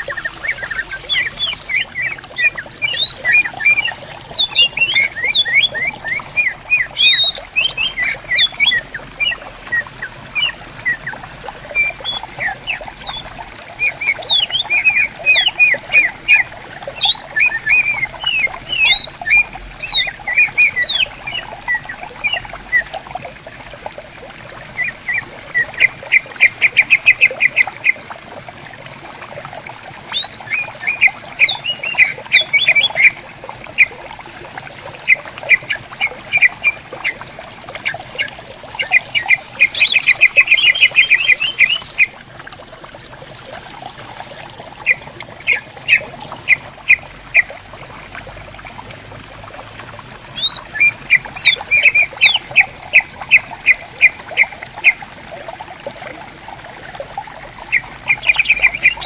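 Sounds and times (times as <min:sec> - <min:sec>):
stream babbling: 0:00.0 - 0:59.0
birds chirping and whistling: 0:00.1 - 0:09.8, 0:10.4 - 0:22.9, 0:30.1 - 0:33.2, 0:38.1 - 0:42.1, 0:50.4 - 0:54.5, 0:57.7 - 0:59.0.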